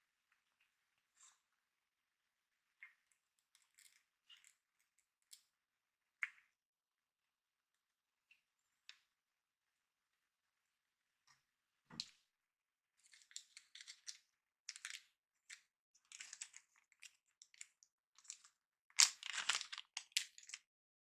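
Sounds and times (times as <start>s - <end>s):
packaging crinkling and rustling: 19.0s - 20.6s.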